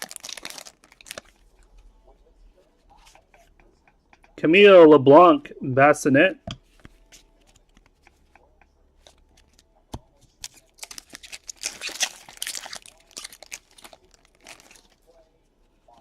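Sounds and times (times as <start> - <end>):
wrapper crinkling and tearing: 0.0 - 1.4, 10.4 - 15.2.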